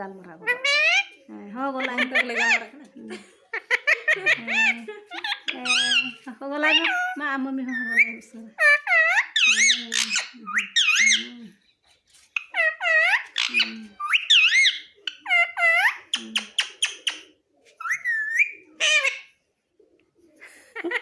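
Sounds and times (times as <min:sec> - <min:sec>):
parakeet squawking: 0:00.4 - 0:02.7, 0:03.7 - 0:11.4, 0:12.4 - 0:17.2, 0:17.8 - 0:19.4.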